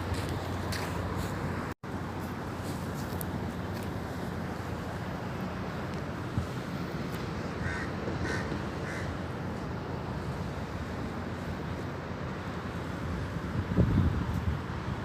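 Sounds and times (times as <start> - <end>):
bird calling: 7.6 - 9.2
wind noise on microphone: 12.9 - 15.0.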